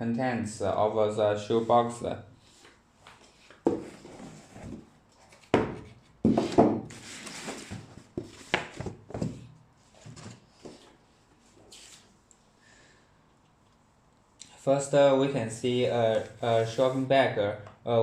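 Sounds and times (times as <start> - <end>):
rubbing and rustling: 1.5 - 12.2
cardboard box lid knocks and scrapes: 3.6 - 9.5.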